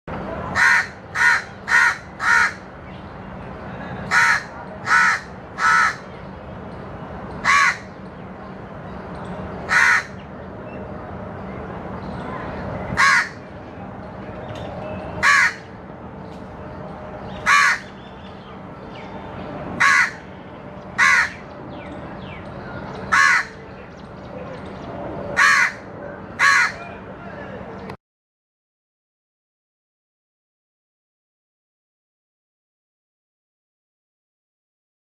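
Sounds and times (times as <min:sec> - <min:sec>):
crow cawing: 0:00.6 - 0:02.6, 0:04.1 - 0:06.0, 0:07.4 - 0:07.9, 0:09.7 - 0:10.2, 0:13.0 - 0:13.4, 0:15.2 - 0:15.7, 0:17.4 - 0:17.9, 0:19.8 - 0:20.2, 0:21.0 - 0:21.4, 0:23.1 - 0:23.6, 0:25.4 - 0:26.9.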